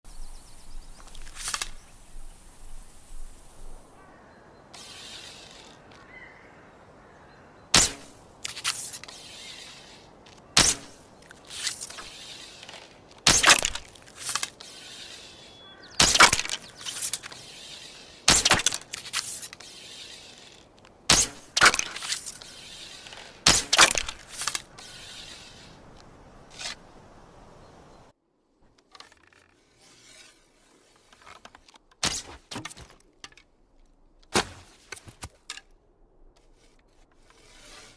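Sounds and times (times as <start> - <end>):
arrow snaps and hits: 7.7 - 9.2, 10.5 - 12.0, 12.6 - 14.6, 16.0 - 17.5, 18.2 - 19.8, 21.1 - 24.8, 32.0 - 32.8, 34.3 - 35.7.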